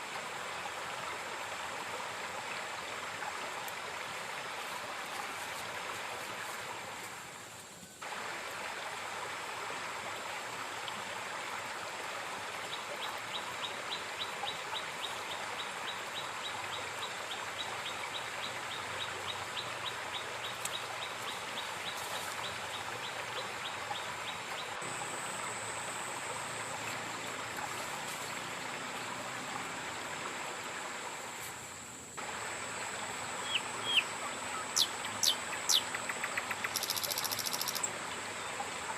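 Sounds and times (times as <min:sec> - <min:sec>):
river water rushing over rocks: 0:08.0 - 0:36.4
small creature chirping: 0:36.7 - 0:37.8.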